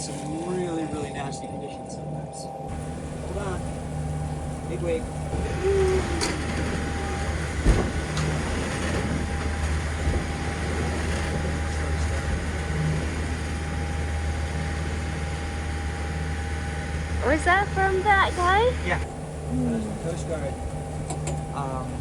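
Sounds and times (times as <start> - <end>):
knocks and clunks: 2.7 - 16.1, 17.2 - 22.0
boat engine droning: 2.7 - 22.0
water rushing along hull: 2.7 - 22.0.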